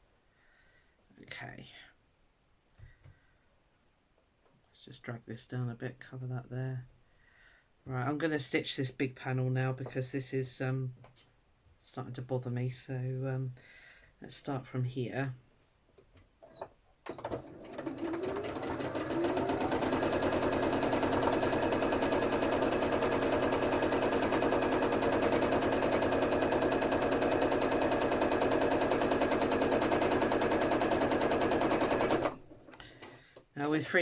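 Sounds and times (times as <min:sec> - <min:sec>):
sewing machine stitching: 0:17.1 - 0:33.0.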